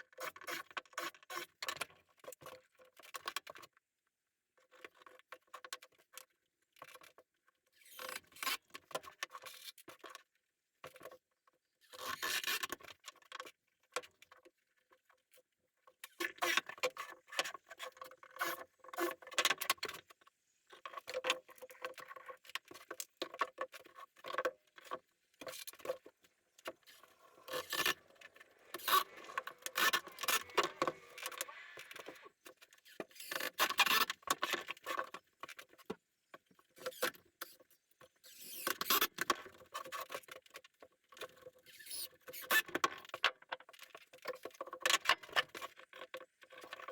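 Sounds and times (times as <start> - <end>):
wood pieces and tools clicking: 22.0 - 35.6.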